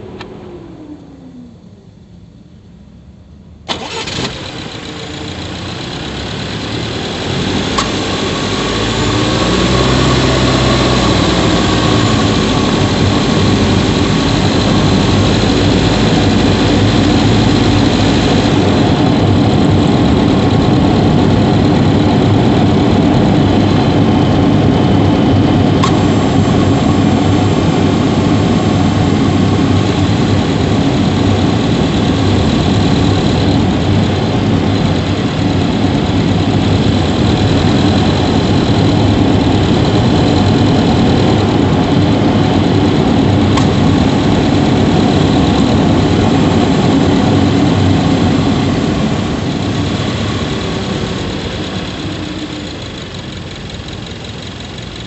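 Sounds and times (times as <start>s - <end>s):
car engine starting and running: 0.0s - 55.0s.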